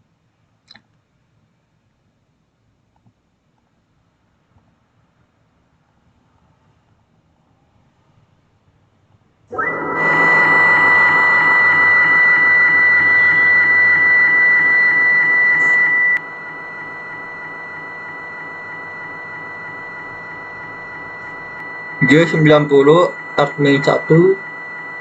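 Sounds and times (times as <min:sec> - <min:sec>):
high steady tone: 0:09.5 - 0:25.0
milling machine motor whine: 0:09.5 - 0:25.0.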